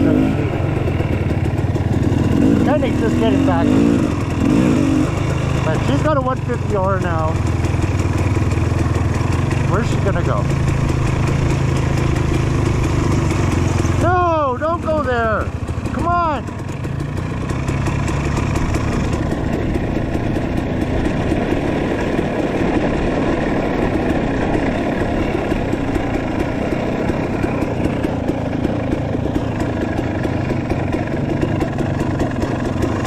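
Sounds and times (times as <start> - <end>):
dirt bike engine running: 0.0 - 33.0.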